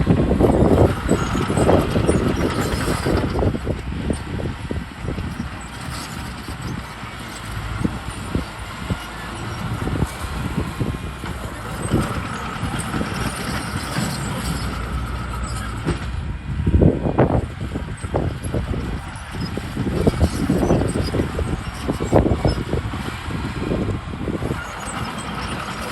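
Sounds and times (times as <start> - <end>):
heavy machinery engine rumble: 0.0 - 25.9
machinery knocks and clunks: 10.7 - 16.2.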